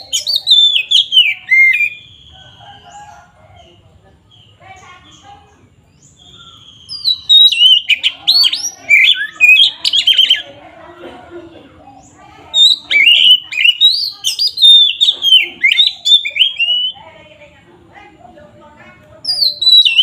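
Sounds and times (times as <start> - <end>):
bird singing whistles and chatters: 0.0 - 3.7, 4.3 - 10.6, 12.0 - 17.1, 19.2 - 20.0.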